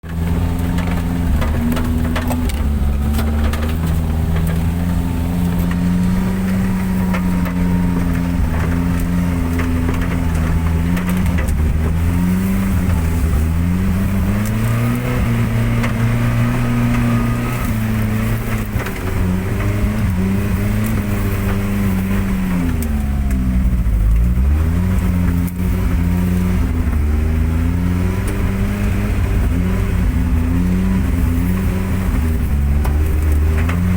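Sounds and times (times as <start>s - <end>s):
knocks and rattles: 0.0s - 23.5s
van engine running: 0.0s - 33.9s.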